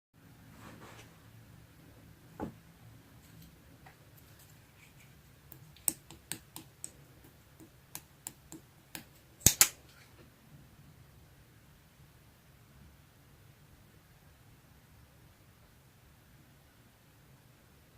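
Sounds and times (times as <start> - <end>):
faint low hum: 0.2 - 17.9
sharp clicks and taps: 5.5 - 9.8.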